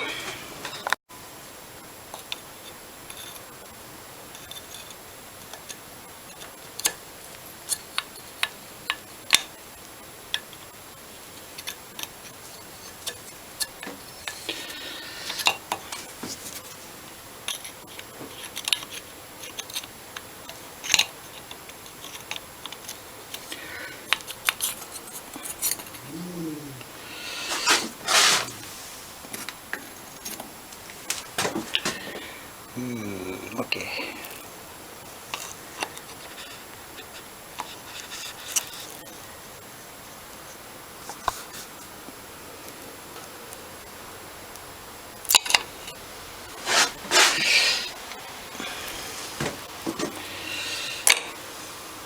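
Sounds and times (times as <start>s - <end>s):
metal scraping: 27.2s - 29.0s, 46.5s - 47.9s.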